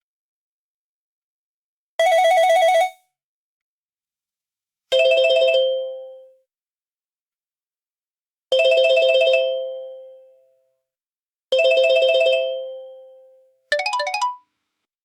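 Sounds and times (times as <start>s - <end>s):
electronic ringtone: 2.0s - 3.0s, 13.7s - 14.5s
telephone ringing trill: 2.0s - 3.0s.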